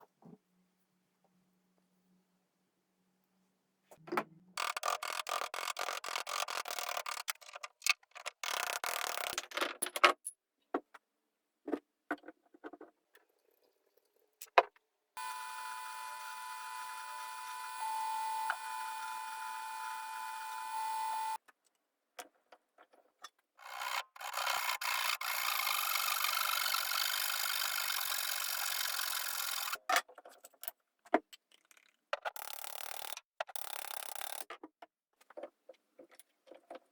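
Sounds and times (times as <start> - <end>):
power tool whining: 15.2 - 21.4.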